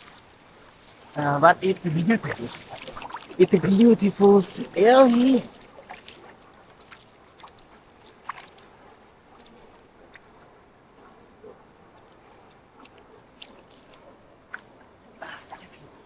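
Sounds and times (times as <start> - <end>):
river water rushing: 0.0 - 7.0
light clicks and splashes: 0.0 - 16.0.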